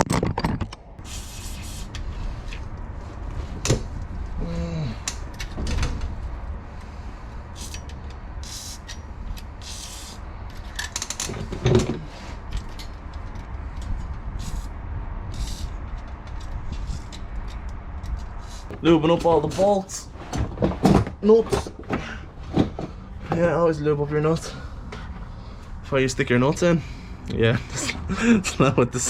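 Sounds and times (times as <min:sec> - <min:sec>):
low steady rumble: 0:00.2 - 0:29.0
aerosol spray hissing: 0:01.0 - 0:01.9.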